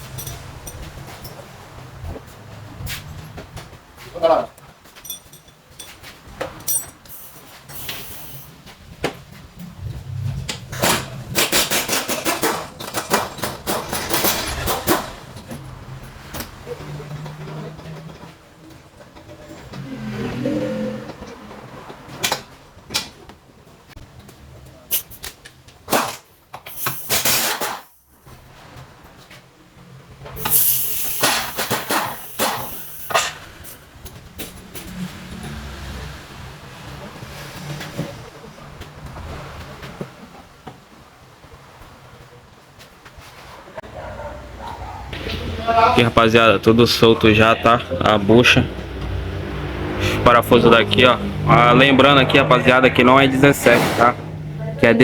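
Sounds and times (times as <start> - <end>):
metal tools clanking: 0.0 - 1.6, 4.9 - 7.8, 10.7 - 19.8.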